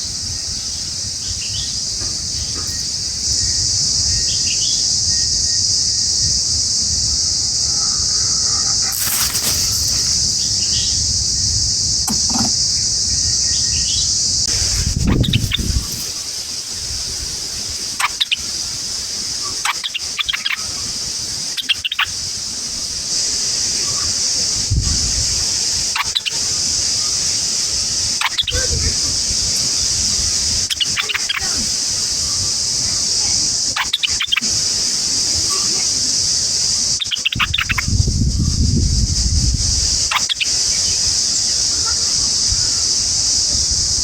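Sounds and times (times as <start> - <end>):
high-pitched insect drone: 0.0 - 44.0
bird chattering high calls: 17.9 - 18.5, 19.5 - 20.9, 30.7 - 31.7.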